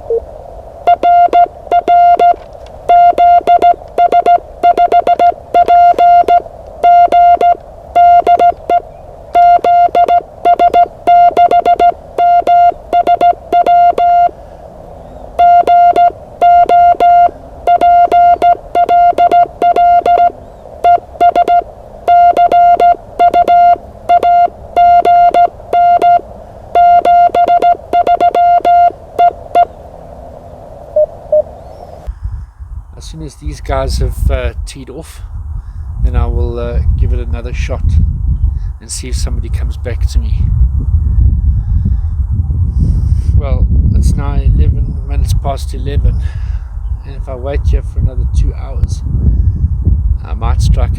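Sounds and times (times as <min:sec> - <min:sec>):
morse code tone: 0:00.0 - 0:14.4, 0:15.4 - 0:29.7.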